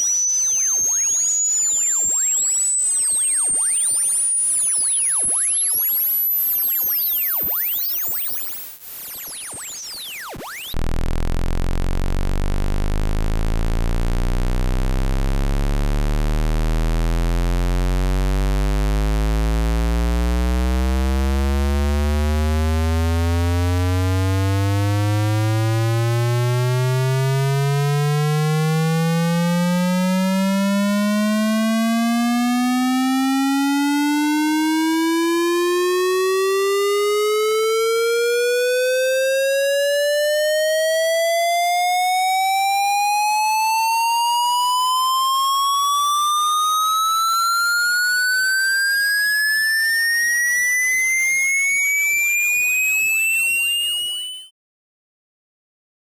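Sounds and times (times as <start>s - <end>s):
high-pitched electronic chirps: 0.0s - 10.8s, 46.8s - 54.5s
buzzy tone rising in pitch: 0.0s - 54.5s.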